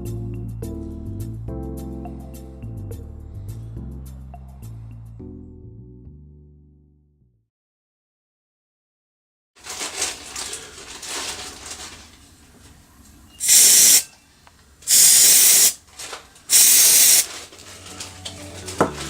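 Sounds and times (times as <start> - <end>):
pressurized jet hissing blasts: 13.4 - 14.1, 14.9 - 15.8, 16.5 - 17.3.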